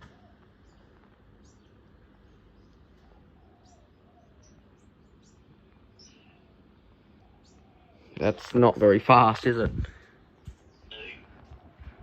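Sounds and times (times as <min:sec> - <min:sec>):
high bird chirps: 0:00.0 - 0:08.2.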